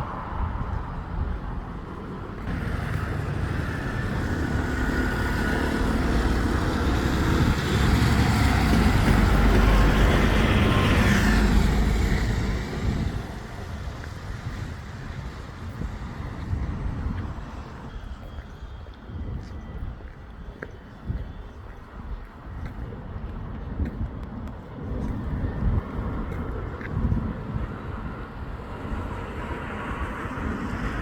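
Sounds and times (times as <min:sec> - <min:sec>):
vehicle passing close by: 0:00.0 - 0:16.8
road traffic: 0:00.0 - 0:31.0.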